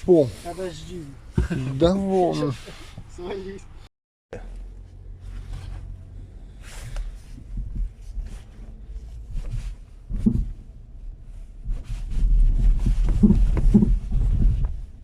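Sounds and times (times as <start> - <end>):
car rolling rumble: 4.4 - 15.0
dull suspension knocks: 9.5 - 10.6, 12.6 - 15.0.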